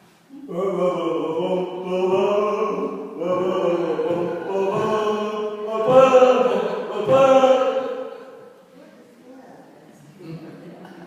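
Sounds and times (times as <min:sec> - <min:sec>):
person chanting long notes: 0:00.4 - 0:08.4.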